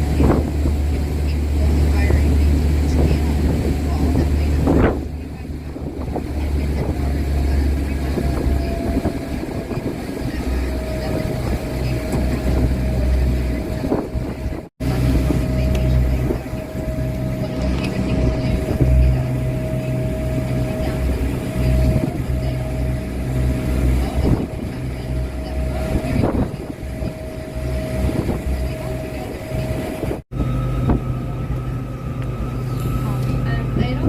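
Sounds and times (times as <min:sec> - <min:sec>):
boat engine droning: 0:00.0 - 0:34.0.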